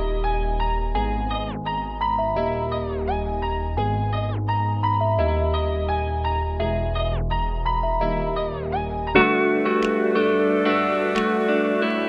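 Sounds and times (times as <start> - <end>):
steady bass: 0.0 - 12.0
plucked string music: 9.2 - 12.0.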